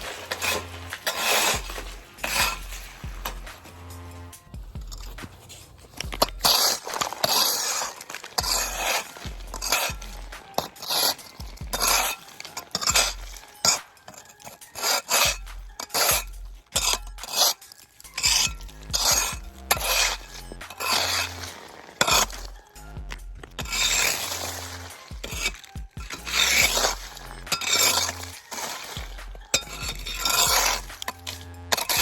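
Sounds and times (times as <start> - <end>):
scraper blade scraping ice: 0.0 - 32.0.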